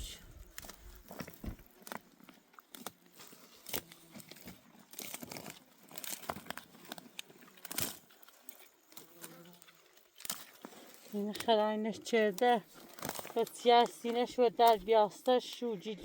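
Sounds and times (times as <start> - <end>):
dry plant stems rustling: 0.0 - 15.8
stems snapping: 2.6 - 3.0, 3.6 - 9.3, 10.2 - 10.6, 12.2 - 15.6.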